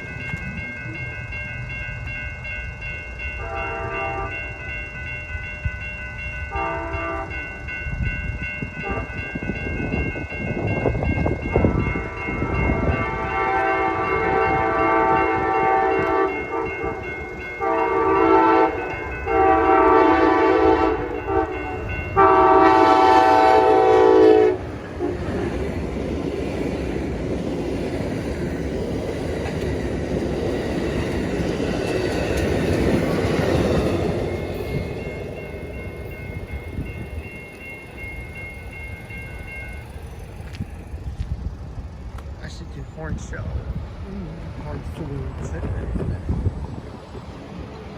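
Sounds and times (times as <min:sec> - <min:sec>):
train air horn blasts: 0:03.4 - 0:04.4, 0:06.5 - 0:07.4, 0:12.4 - 0:17.0, 0:17.6 - 0:25.3
train wheels clattering on rails: 0:05.6 - 0:47.9.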